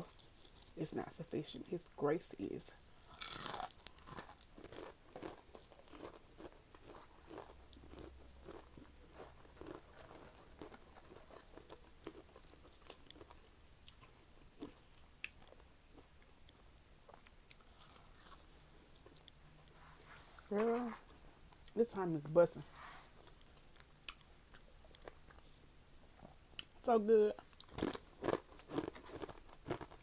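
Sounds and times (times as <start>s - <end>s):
chewing and crunching: 3.0s - 19.8s, 23.1s - 25.6s, 27.4s - 30.0s.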